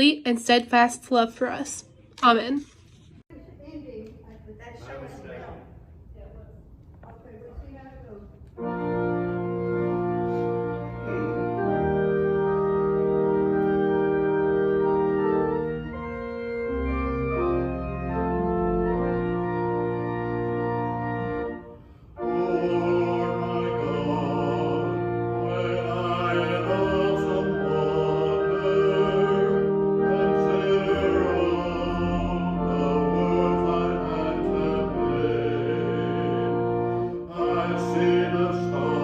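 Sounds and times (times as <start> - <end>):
organ playing hymn chords: 8.5 - 39.0.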